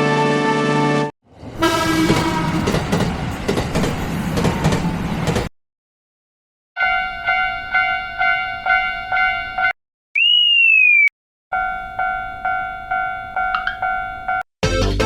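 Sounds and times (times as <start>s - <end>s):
electronic crossing bell ringing: 6.8s - 9.7s, 11.5s - 14.4s
loud whistle tone: 10.2s - 11.1s.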